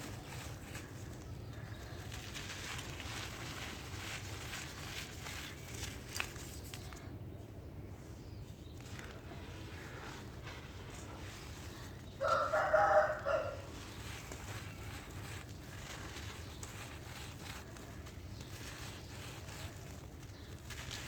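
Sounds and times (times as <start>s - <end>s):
steady low hiss: 0.0s - 21.0s
rooster crowing: 12.2s - 13.7s.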